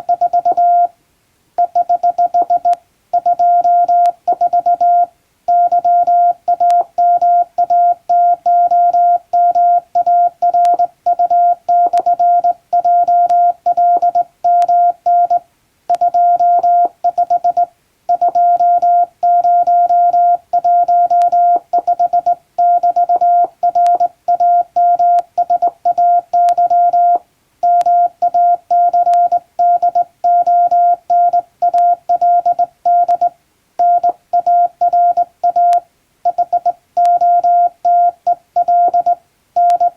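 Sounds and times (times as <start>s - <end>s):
morse code beeps: 0.0s - 0.9s, 1.6s - 39.9s.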